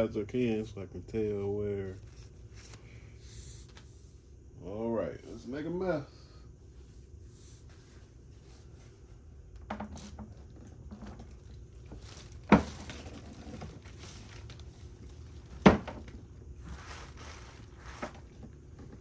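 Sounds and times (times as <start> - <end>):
plastic crinkling: 10.9 - 18.4.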